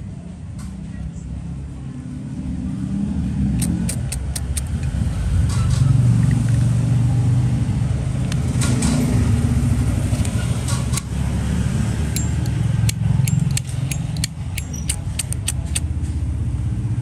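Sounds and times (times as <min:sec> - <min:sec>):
passing vehicle engine rumble: 0:00.0 - 0:17.0
sharp clicks: 0:03.6 - 0:05.0, 0:12.1 - 0:15.9.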